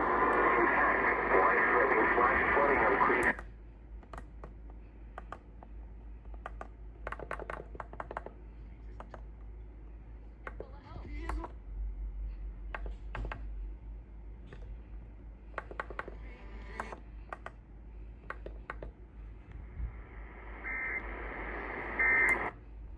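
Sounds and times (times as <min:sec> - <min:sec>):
radio receiver hiss: 0:00.0 - 0:03.4, 0:19.9 - 0:22.6
sharp clicks: 0:03.2 - 0:04.6, 0:06.3 - 0:08.4.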